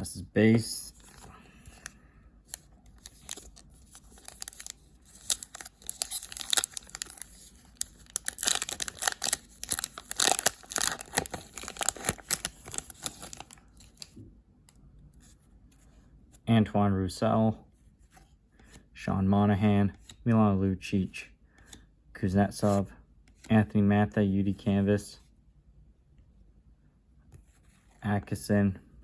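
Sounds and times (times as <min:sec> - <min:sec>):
wrapper tearing and crinkling: 0:02.5 - 0:14.1.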